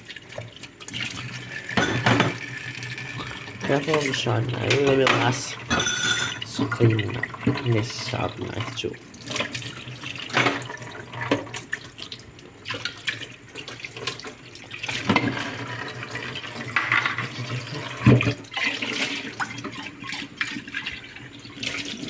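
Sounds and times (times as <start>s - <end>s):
dishware clinking against sink: 1.7s - 2.5s, 3.6s - 7.2s, 16.8s - 17.4s
tap running into a sink: 1.7s - 2.5s.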